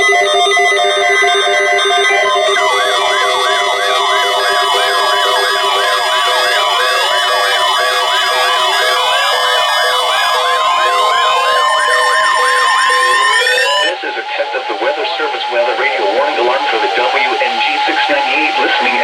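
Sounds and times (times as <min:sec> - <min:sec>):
siren-like warble: 0:04.0 - 0:13.9
rising electronic glides: 0:04.2 - 0:10.4
steady high electronic tones: 0:04.2 - 0:10.5.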